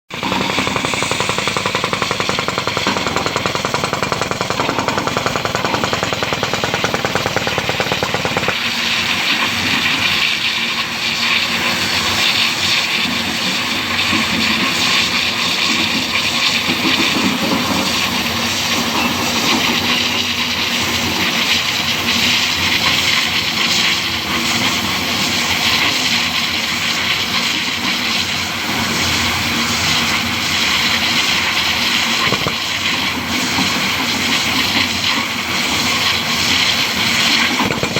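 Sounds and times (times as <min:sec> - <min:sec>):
stone-cutting wire saw rattling: 0:00.1 - 0:09.1, 0:32.1 - 0:32.8, 0:36.5 - 0:37.9.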